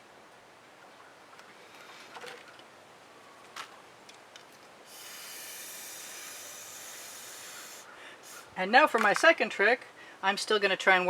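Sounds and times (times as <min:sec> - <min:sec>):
steady high hiss: 0:00.0 - 0:11.0
light taps and scrapes: 0:01.4 - 0:02.7.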